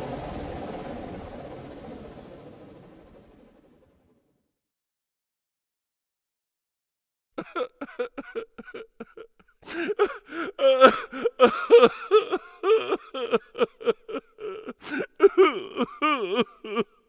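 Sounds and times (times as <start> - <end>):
whoosh-down flutter effect: 0.0 - 4.2.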